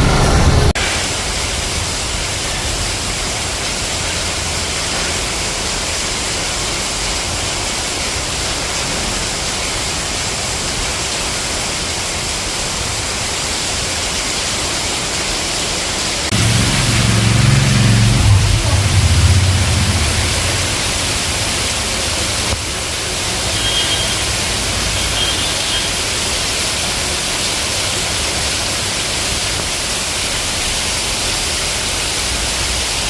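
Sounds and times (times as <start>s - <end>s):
low rumble: 0.0s - 2.1s, 16.3s - 22.6s
heavy rain hissing: 0.0s - 33.0s.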